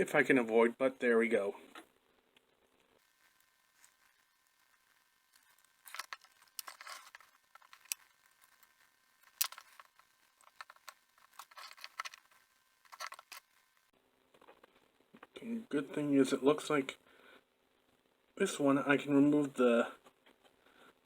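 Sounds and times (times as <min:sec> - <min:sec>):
small metal parts clicking: 0:04.9 - 0:13.6.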